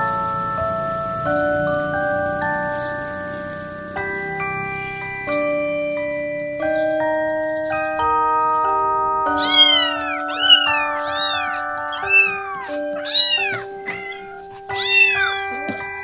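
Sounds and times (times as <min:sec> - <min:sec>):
cat meowing: 0:09.4 - 0:16.0.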